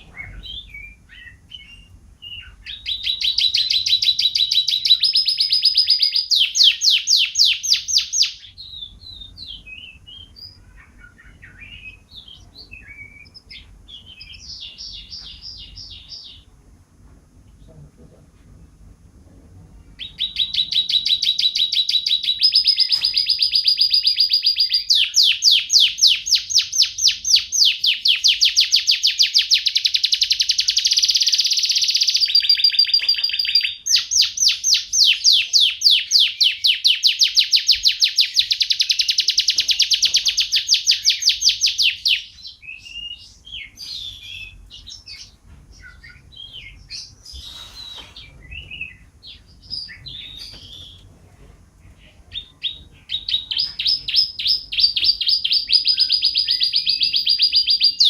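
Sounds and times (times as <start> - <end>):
canary singing trills: 0.0 - 16.6, 19.8 - 51.1, 51.9 - 58.0.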